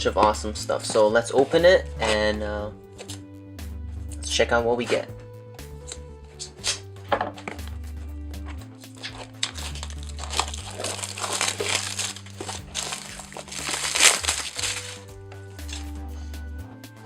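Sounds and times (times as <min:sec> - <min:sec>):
background music with bass line: 0:00.0 - 0:17.0
packaging crinkling and rustling: 0:08.9 - 0:15.9.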